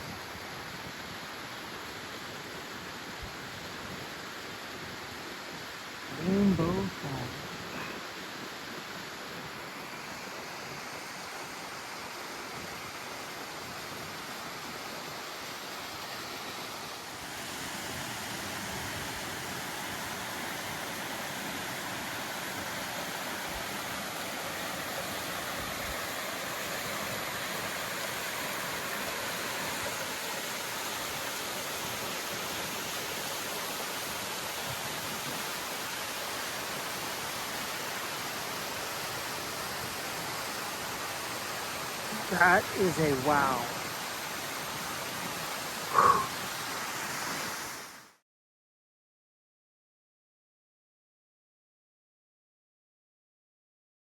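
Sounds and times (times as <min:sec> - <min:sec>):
waterfall rushing: 0:05.9 - 0:48.0.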